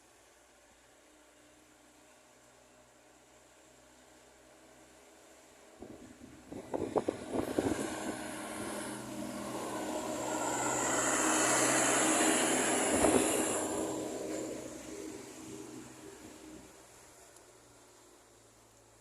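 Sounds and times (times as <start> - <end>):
bus engine and road noise: 0.0 - 19.0
wind buffeting microphone: 5.8 - 8.8, 9.4 - 14.1.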